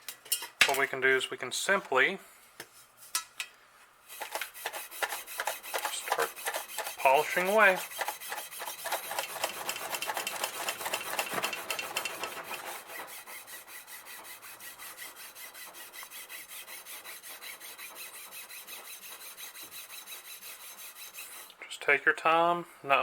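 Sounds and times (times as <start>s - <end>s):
rubbing strokes on metal rim: 4.1s - 21.6s.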